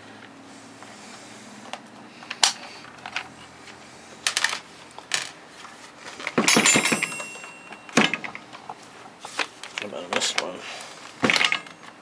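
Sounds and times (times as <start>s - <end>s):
clicks and knocks of saw parts: 1.7s - 5.4s, 6.1s - 12.0s
metallic rattling and clinking: 4.2s - 5.4s, 6.1s - 10.4s, 11.0s - 12.0s.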